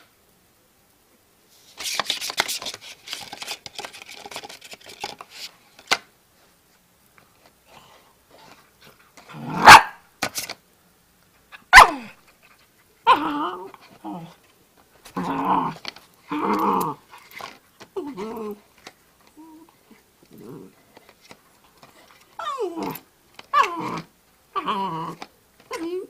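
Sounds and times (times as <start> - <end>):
rustling: 1.4 - 26.0
puppy barking: 9.5 - 10.0, 11.6 - 12.1
puppy whine: 13.0 - 14.4, 15.1 - 17.1, 18.0 - 18.6, 19.3 - 20.8, 22.3 - 26.0.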